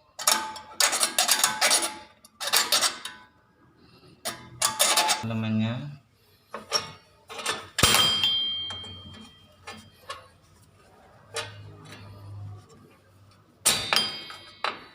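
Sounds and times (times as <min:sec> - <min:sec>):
metal tools clinking and knocking: 0:00.2 - 0:03.3, 0:04.2 - 0:05.2, 0:06.5 - 0:10.3, 0:11.2 - 0:12.4, 0:13.6 - 0:14.9
sharp metallic clang: 0:07.5 - 0:10.2, 0:13.6 - 0:14.9.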